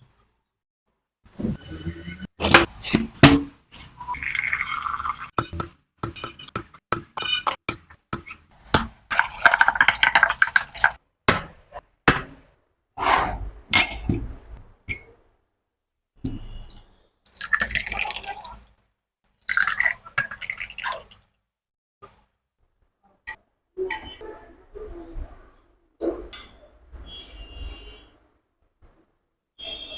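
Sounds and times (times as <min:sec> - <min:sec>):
liquid being poured: 0:04.1 - 0:05.6, 0:09.1 - 0:11.0, 0:17.3 - 0:18.8, 0:19.4 - 0:21.3
glassware and utensils clinking: 0:04.2 - 0:08.4, 0:13.8 - 0:14.3.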